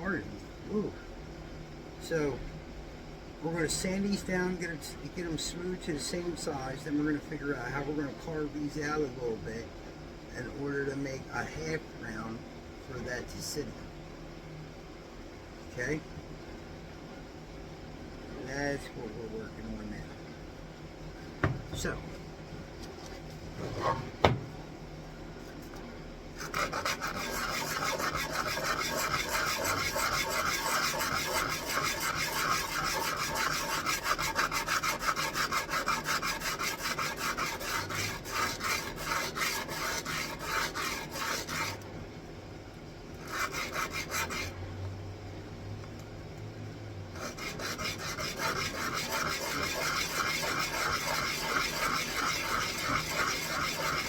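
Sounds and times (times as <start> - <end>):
single knock: 21.4 - 21.8
wooden pegs sanded by hand: 26.4 - 41.8, 43.2 - 44.5, 47.2 - 54.0.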